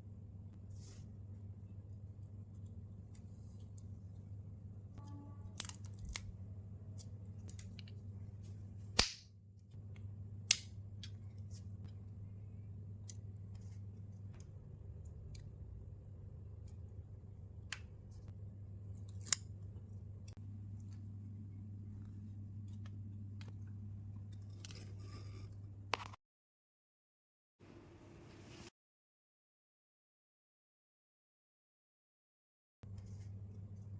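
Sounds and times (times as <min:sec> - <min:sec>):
steady low hum: 0:00.0 - 0:26.0
packaging clicks and snaps: 0:05.5 - 0:06.3.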